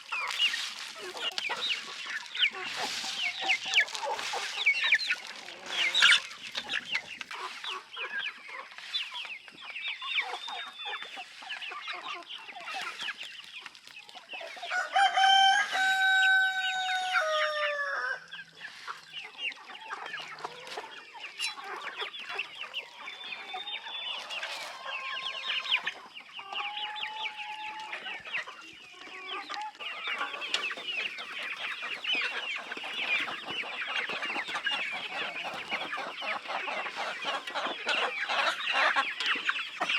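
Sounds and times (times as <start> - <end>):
chickens clucking: 0.0 - 39.9
rooster crowing: 14.7 - 18.2.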